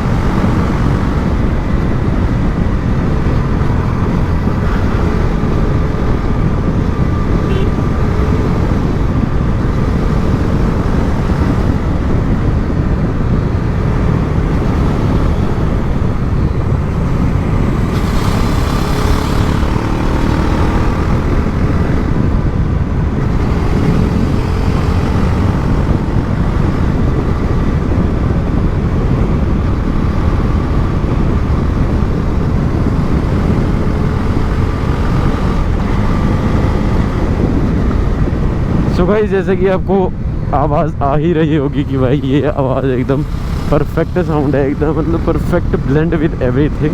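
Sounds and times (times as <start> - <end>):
motorcycle engine drone: 0.0 - 46.9
road and wind noise: 0.0 - 46.9.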